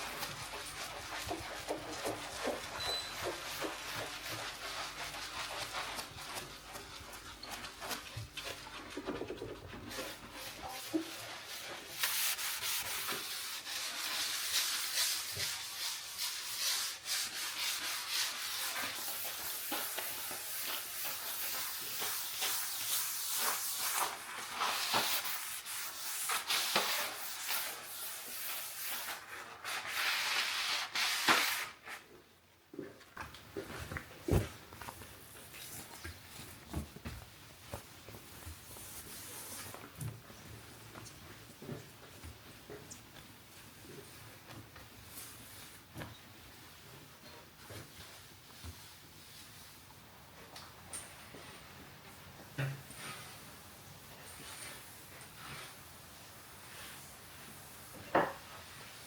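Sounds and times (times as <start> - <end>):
hands scrubbing: 0.0 - 31.7.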